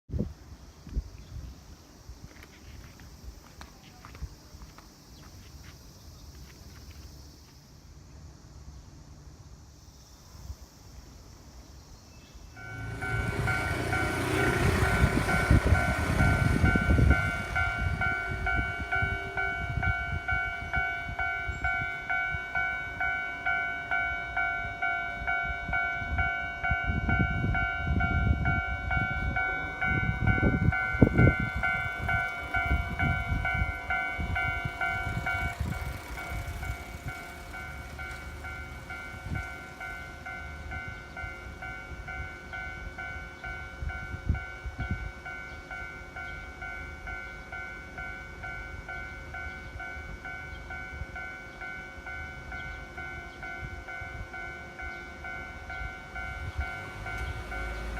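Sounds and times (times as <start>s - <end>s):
railroad crossing warning bell: 12.4s - 57.9s
trains rumbling past: 12.4s - 57.9s.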